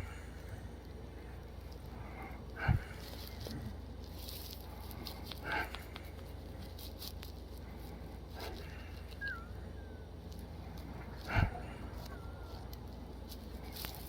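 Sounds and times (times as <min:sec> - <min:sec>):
faint high whistling tones: 0:08.6 - 0:13.0
girl breathing with a wheeze: 0:10.8 - 0:12.6.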